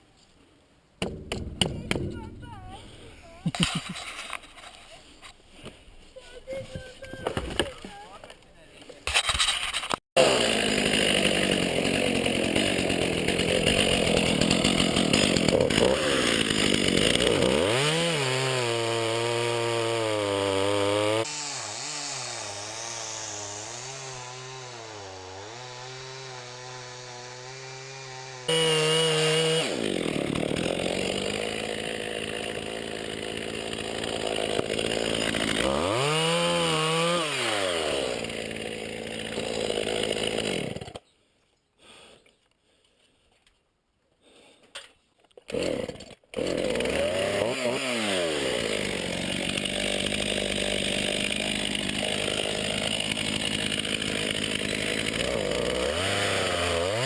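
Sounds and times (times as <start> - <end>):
chainsaw cutting wood: 1.0 - 4.8, 9.0 - 41.0, 45.4 - 57.0.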